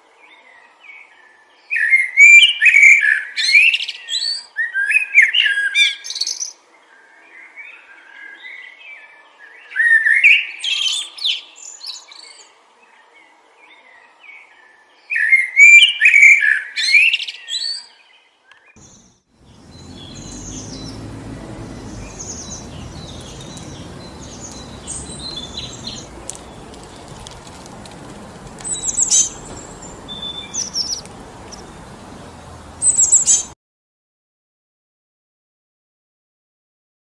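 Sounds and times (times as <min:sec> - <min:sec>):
birds singing: 0:18.8 - 0:33.6
high bird chirps: 0:18.8 - 0:33.6
wind through trees: 0:18.8 - 0:33.6.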